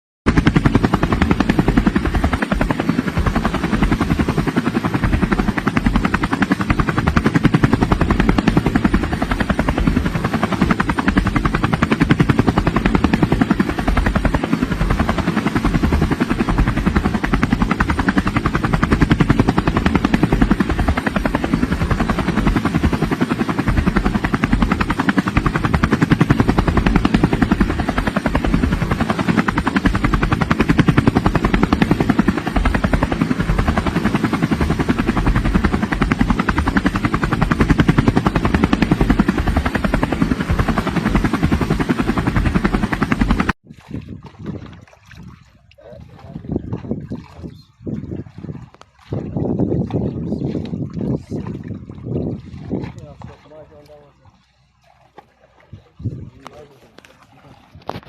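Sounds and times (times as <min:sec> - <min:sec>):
motor running with pulsing beat: 0:00.3 - 0:43.5.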